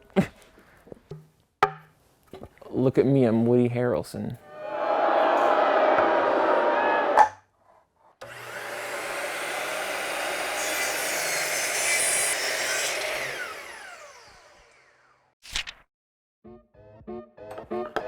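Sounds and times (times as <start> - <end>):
router cutting wood: 8.2 - 15.4.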